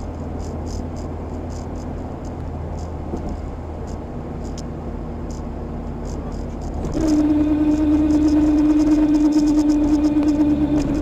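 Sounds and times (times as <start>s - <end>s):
road and engine drone: 0.0s - 11.0s
high-pitched squeaks: 6.0s - 11.0s.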